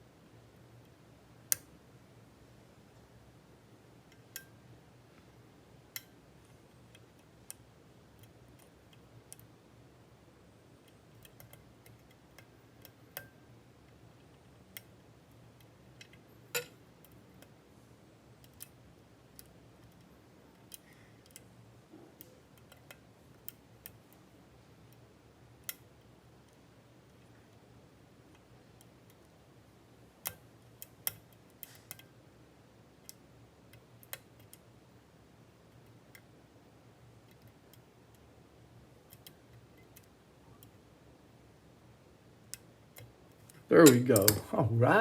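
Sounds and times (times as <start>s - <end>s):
low steady hum: 0.0s - 45.0s
lock picking clicks: 43.8s - 44.5s.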